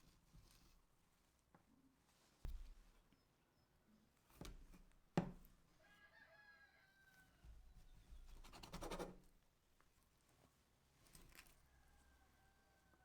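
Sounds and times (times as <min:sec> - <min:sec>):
faint rooster crow: 0:05.7 - 0:07.9, 0:11.4 - 0:13.0.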